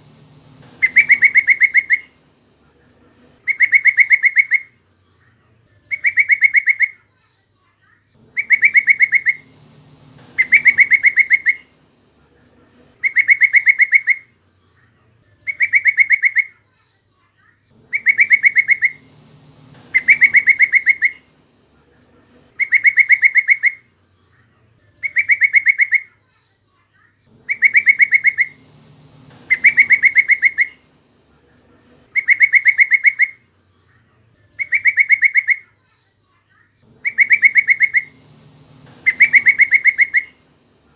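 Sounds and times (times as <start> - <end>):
bird chattering call: 0.0 - 2.4, 3.2 - 4.8, 5.9 - 7.0, 8.2 - 11.9, 12.7 - 14.3, 15.5 - 16.6, 17.8 - 21.6, 22.3 - 23.9, 25.0 - 26.1, 27.3 - 31.1, 31.8 - 33.5, 34.6 - 35.8, 36.8 - 40.9.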